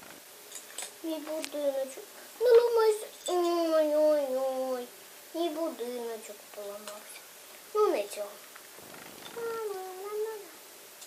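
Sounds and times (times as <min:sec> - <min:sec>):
child making meow-like call: 0:09.4 - 0:10.6.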